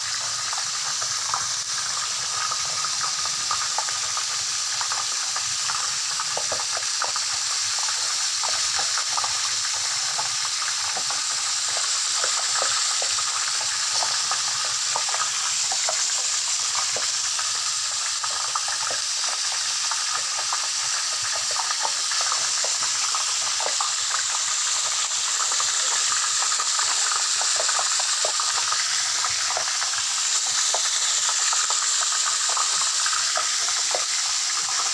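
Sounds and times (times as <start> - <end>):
oil sizzling with crackling pops: 0.0 - 34.9.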